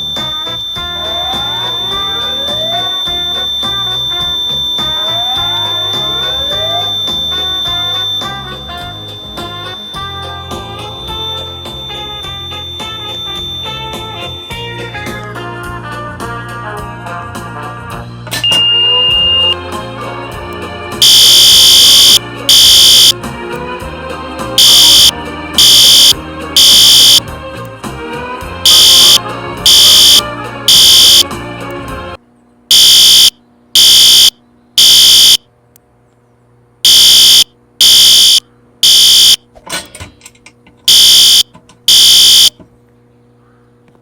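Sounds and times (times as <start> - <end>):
pitch-varying sound: 0.0 - 14.7, 18.4 - 19.6, 21.0 - 23.1, 24.6 - 27.2, 28.7 - 31.2, 32.7 - 35.4, 36.9 - 39.4, 40.9 - 42.5
fire alarm blasts: 0.0 - 14.9, 18.4 - 19.6, 21.0 - 23.2, 24.6 - 27.2, 28.6 - 31.2, 32.7 - 35.4, 36.9 - 39.4, 40.9 - 42.5.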